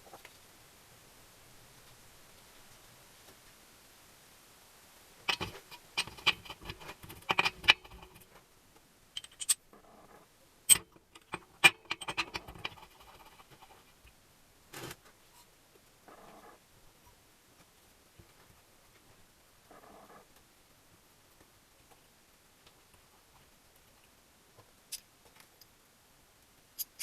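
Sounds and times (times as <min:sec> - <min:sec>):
metal tools clinking and tapping: 0:05.3 - 0:08.2, 0:09.2 - 0:09.6, 0:10.7 - 0:13.9
metal scraping: 0:05.3 - 0:08.3, 0:09.2 - 0:14.1.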